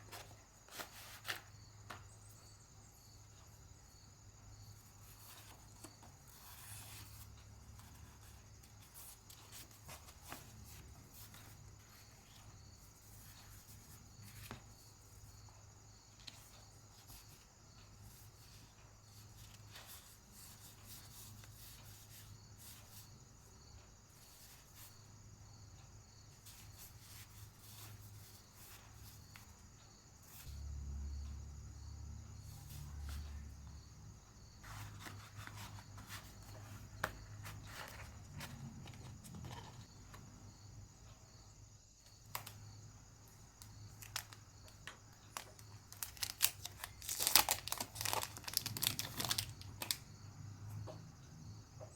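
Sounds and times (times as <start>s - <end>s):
small clicks and rustles: 43.6s - 50.0s.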